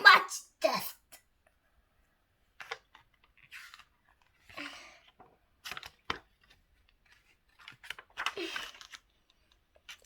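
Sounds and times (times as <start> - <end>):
paper rustling: 2.5 - 10.0.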